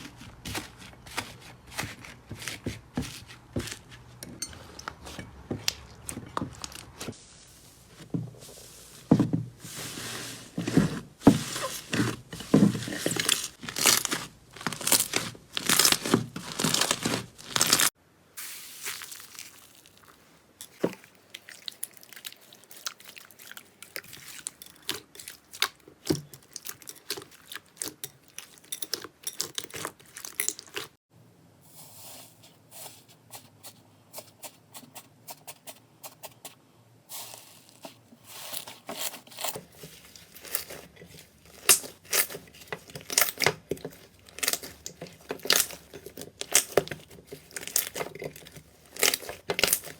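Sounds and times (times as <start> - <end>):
slime crackling and popping: 13.3 - 18.0, 41.5 - 42.4, 43.0 - 43.6, 44.3 - 49.9.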